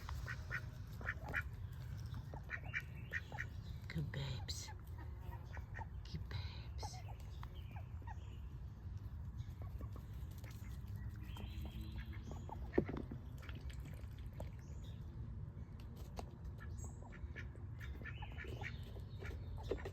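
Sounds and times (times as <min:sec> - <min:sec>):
ducks quacking softly: 0:00.0 - 0:01.6, 0:02.2 - 0:03.6, 0:04.4 - 0:08.2, 0:09.5 - 0:13.6, 0:16.6 - 0:19.9
low steady rumble: 0:00.0 - 0:19.6.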